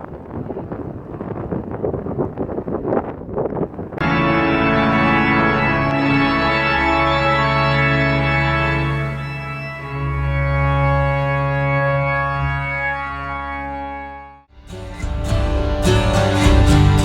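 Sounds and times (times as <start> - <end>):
wind buffeting microphone: 0.0 - 6.0
sustained organ chords: 4.0 - 17.0.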